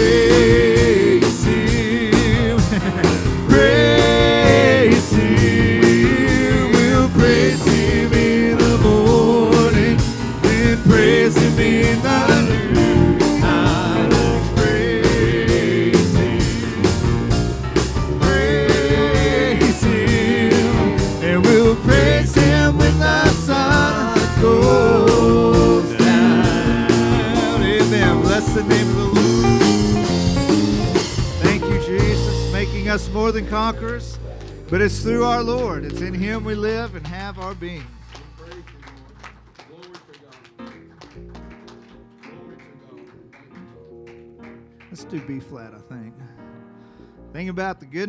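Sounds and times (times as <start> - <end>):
voices singing: 0.0 - 38.1
steady drum beat: 0.0 - 39.7
worship band playing: 0.0 - 47.1.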